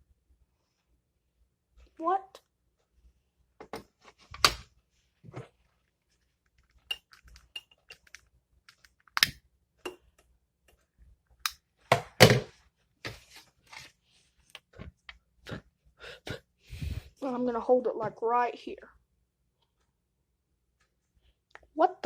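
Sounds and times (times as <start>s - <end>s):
clicks and knocks of objects handled: 5.3s - 12.4s.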